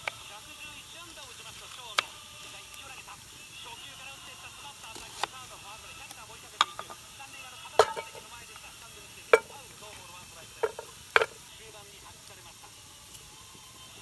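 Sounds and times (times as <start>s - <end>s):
utensil knocking on metal pot: 6.5s - 7.1s, 7.8s - 8.5s, 9.2s - 9.8s, 10.6s - 11.5s.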